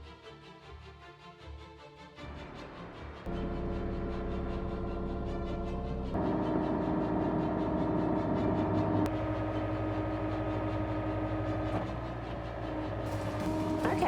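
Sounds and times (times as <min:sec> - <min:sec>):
excavator engine running: 0:03.3 - 0:14.0.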